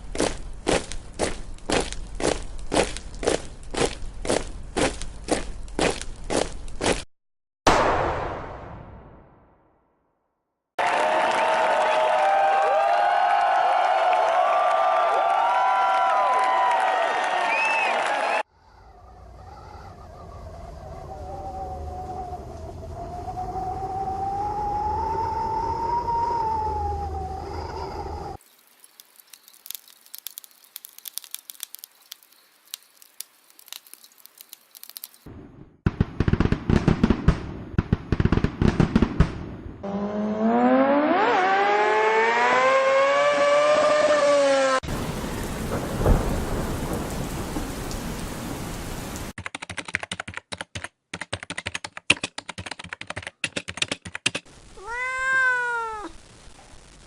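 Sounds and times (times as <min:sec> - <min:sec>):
rain-like hiss: 0:27.7 - 0:35.3, 0:44.8 - 0:49.4, 0:54.5 - 0:57.0
sparse crackling: 0:28.4 - 0:35.3.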